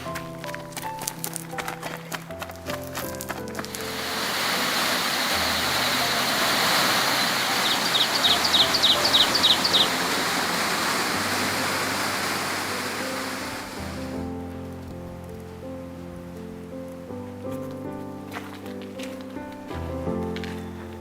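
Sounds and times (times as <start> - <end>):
water rushing: 3.4 - 14.5
bird trilling: 3.8 - 14.0.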